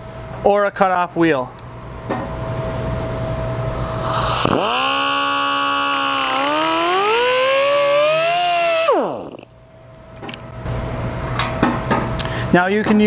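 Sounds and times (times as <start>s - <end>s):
cutoff wheel motor whine: 3.7s - 9.5s.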